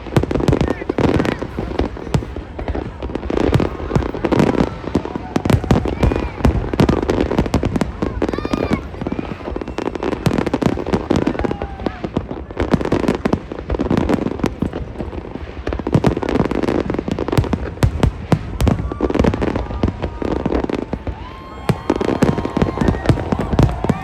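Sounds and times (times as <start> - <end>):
fireworks bangs and crackles: 0.0 - 24.0
low rumble of explosions: 0.0 - 24.0.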